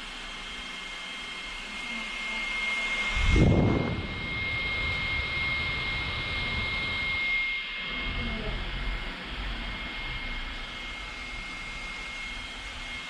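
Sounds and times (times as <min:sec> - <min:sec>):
electric fan running: 0:00.0 - 0:13.0.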